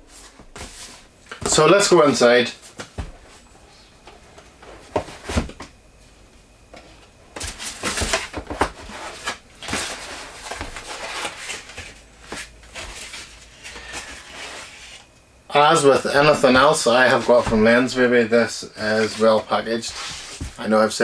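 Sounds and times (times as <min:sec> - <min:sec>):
packaging rustling and scraping: 0:06.7 - 0:15.1, 0:15.8 - 0:20.7.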